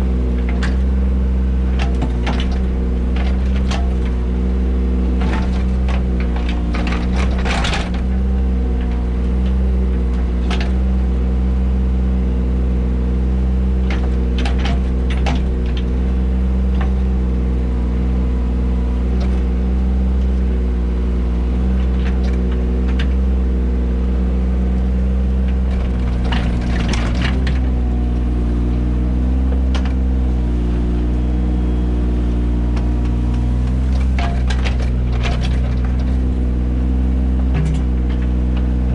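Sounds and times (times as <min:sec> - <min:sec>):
diesel engine running: 0:00.0 - 0:38.9
excavator knocks and clanks: 0:00.2 - 0:01.0, 0:01.6 - 0:11.0, 0:13.8 - 0:17.1, 0:21.6 - 0:23.4, 0:25.4 - 0:31.2, 0:32.6 - 0:38.9.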